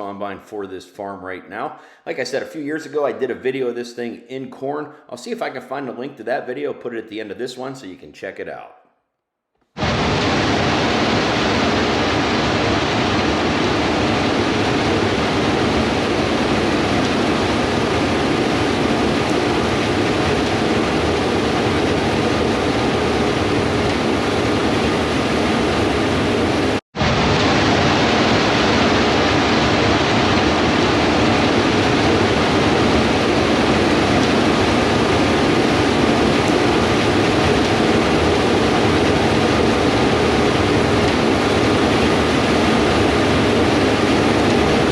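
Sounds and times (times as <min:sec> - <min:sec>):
combine harvester running: 0:09.8 - 0:44.9.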